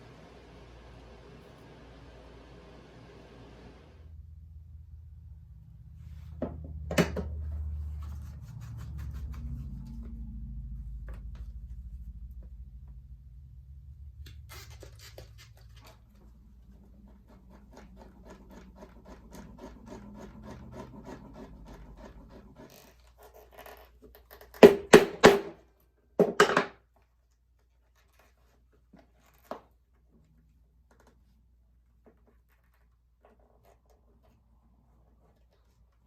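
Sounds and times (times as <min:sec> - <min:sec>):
faint scratching and rubbing: 0:07.7 - 0:10.6.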